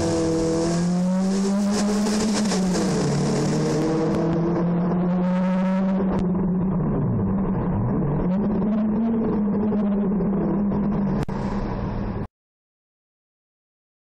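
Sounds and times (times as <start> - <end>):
car engine revving: 0.0 - 12.3.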